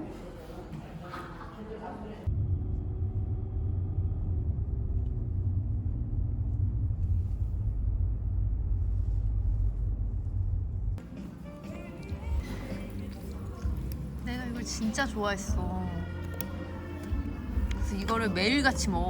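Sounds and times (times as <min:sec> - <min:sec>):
car road and engine noise: 0:02.3 - 0:11.0
faint hum: 0:02.3 - 0:18.6.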